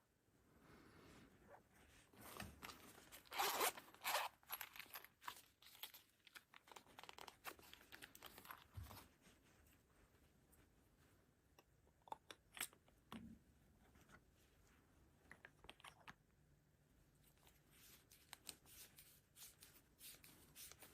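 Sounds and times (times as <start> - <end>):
zipper rasping open: 3.2 - 5.0.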